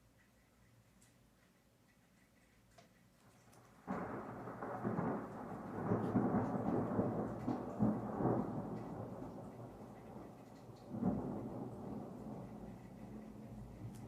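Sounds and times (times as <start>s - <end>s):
rain: 0.0s - 14.0s
thunder rumbling: 3.8s - 14.0s.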